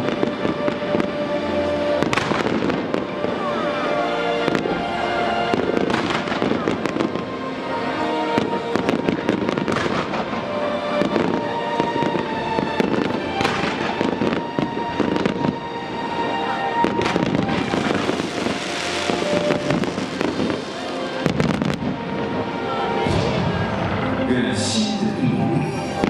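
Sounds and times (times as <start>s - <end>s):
music with held notes: 0.0s - 26.0s
fireworks bangs: 2.0s - 3.7s, 5.5s - 7.3s, 8.3s - 15.7s, 16.8s - 25.2s
fireworks crackling hiss: 16.9s - 22.4s.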